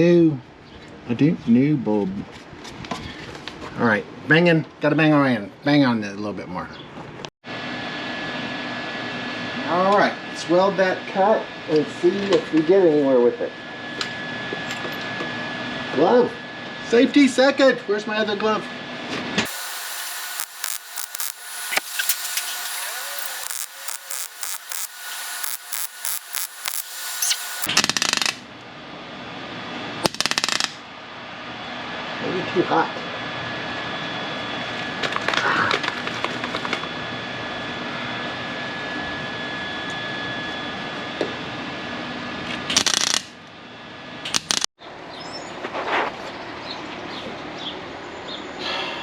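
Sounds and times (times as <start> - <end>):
steady hiss: 19.5 - 27.7
steady hum: 19.5 - 27.7
welding crackle: 19.5 - 27.7.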